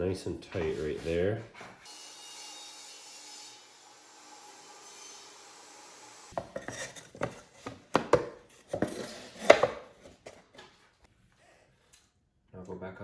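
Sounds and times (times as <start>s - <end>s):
wood knocking on workbench: 6.4s - 9.8s.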